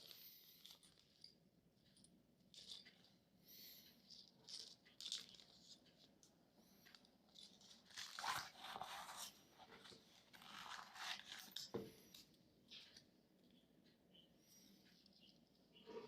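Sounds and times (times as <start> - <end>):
packaging rustling and tearing: 7.4 - 11.7.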